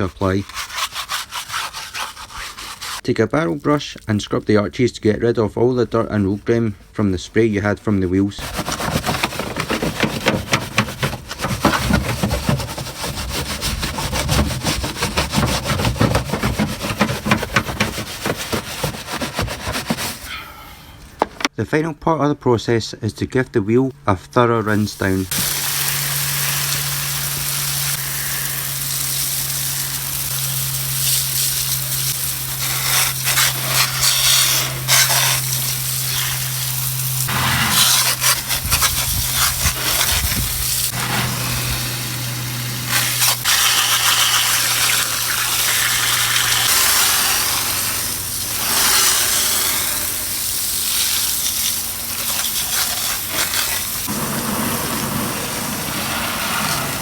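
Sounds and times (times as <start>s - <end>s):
hose spray hissing and splashing: 8.4s - 20.3s, 24.7s - 57.0s.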